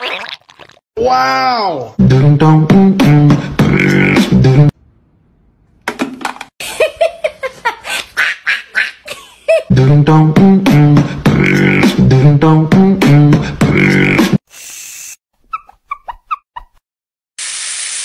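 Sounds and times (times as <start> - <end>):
buzzing vocal riff: 2.0 - 4.7, 9.7 - 14.4.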